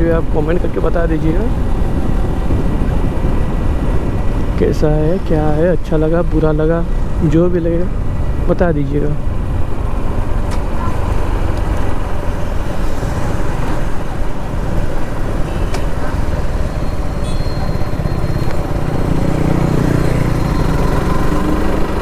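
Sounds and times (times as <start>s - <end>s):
motorcycle engine: 0.0s - 4.6s, 9.2s - 22.0s
wind buffeting microphone: 0.0s - 7.2s.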